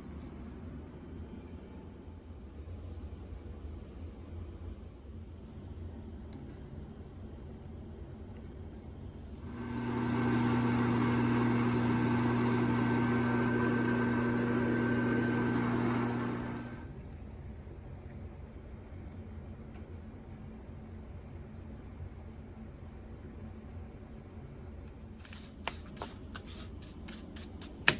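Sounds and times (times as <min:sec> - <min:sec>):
lathe motor humming: 0:09.4 - 0:16.9.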